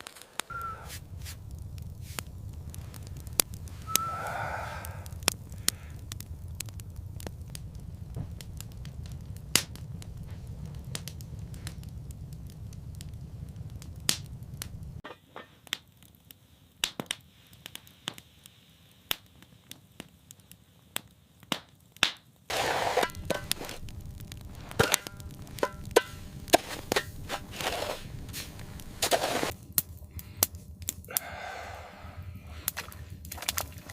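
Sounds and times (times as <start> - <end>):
sharp crackles and snaps: 0.0 - 33.9
low steady rumble: 0.5 - 15.0, 22.5 - 33.9.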